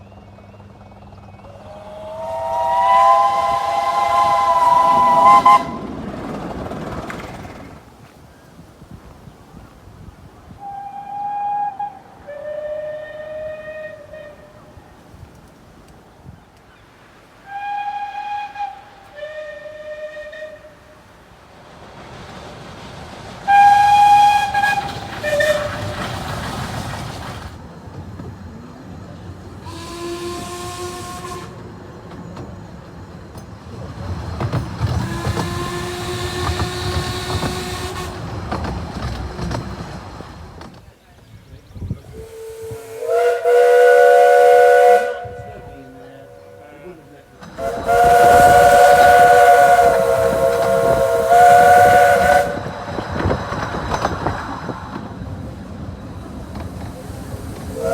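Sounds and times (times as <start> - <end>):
rumble of moving train: 0.0 - 57.9
steam locomotive whistle blasts: 1.5 - 6.0, 10.5 - 15.1, 17.4 - 21.1, 23.4 - 26.2, 29.6 - 31.8, 35.0 - 38.4, 42.0 - 54.2, 56.8 - 57.9
steam hiss: 1.6 - 28.1, 28.9 - 40.9, 41.8 - 57.9.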